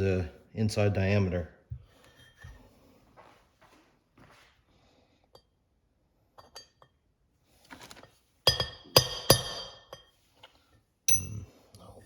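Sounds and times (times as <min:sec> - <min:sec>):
metal-on-metal strikes with ringing: 0:11.1 - 0:11.4.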